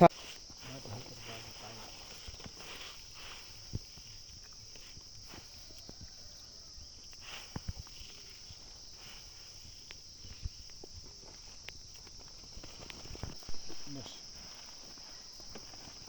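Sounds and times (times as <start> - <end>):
insects chirring: 0.0 - 16.0.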